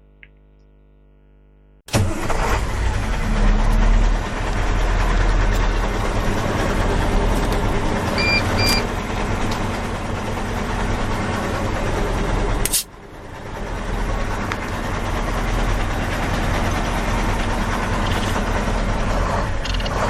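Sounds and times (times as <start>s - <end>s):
heavy vehicle engine rumbling: 1.9s - 20.0s
short high beeps: 8.2s - 8.8s.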